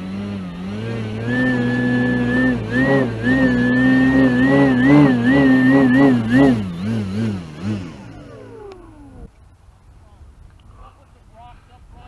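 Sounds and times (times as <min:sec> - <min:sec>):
electric motor and propeller whine: 0:00.0 - 0:09.4.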